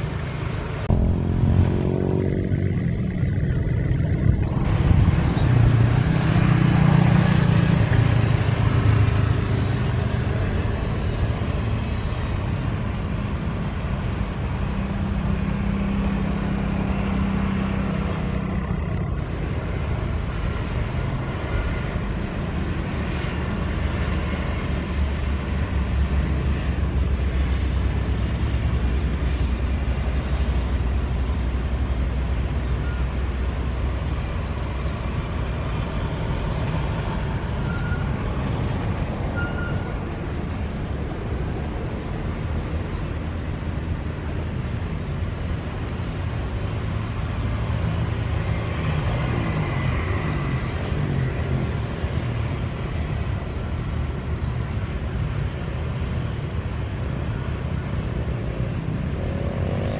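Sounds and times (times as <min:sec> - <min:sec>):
low engine rumble: 0:00.0 - 0:49.2
deep steady hum: 0:00.8 - 0:06.1.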